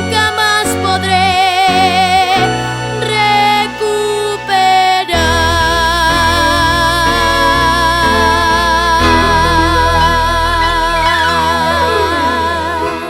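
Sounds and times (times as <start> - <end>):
instrumental tango music: 0.0 - 13.0.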